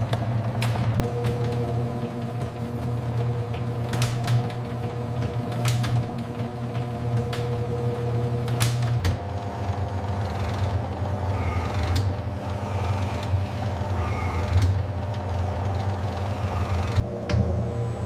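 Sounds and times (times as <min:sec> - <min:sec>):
industrial machinery humming: 0:00.0 - 0:18.0
clicks and clanks: 0:03.5 - 0:07.6.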